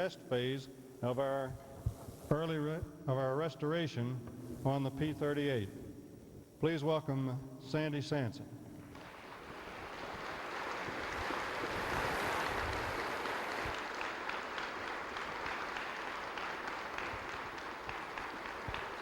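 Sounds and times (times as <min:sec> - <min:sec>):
audience applauding: 0:08.9 - 0:19.0.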